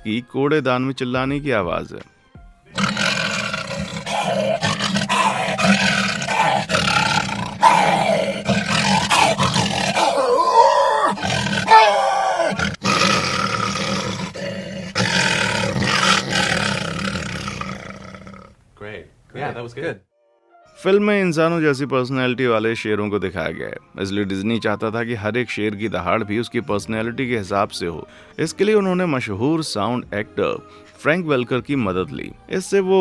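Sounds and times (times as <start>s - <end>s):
man roaring into a metal can: 2.8s - 18.5s.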